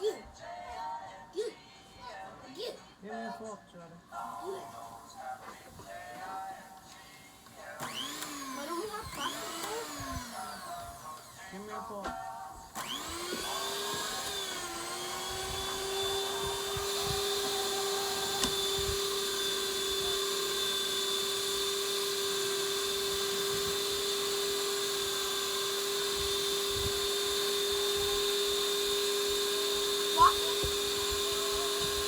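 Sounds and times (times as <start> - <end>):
kitchen mixer motor whining: 7.7 - 32.0.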